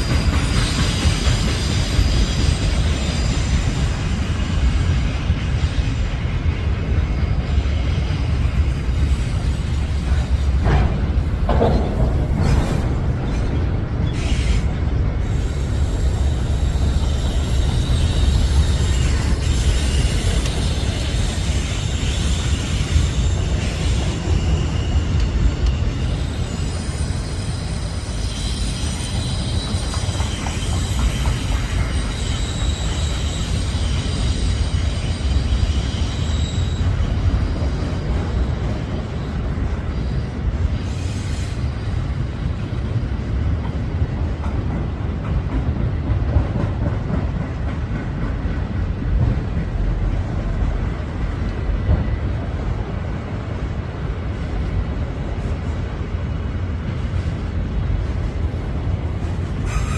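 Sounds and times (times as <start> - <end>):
train wheels rumbling on rail: 0.0 - 59.9
steel wheel squeal: 11.6 - 38.7, 59.6 - 59.9.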